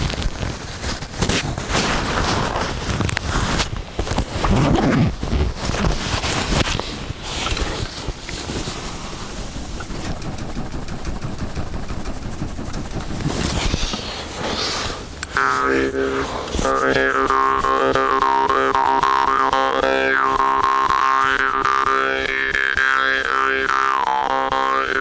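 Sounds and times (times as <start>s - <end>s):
wind rumbling on microphone: 0.0s - 18.0s
campfire popping and crackling: 2.6s - 15.6s.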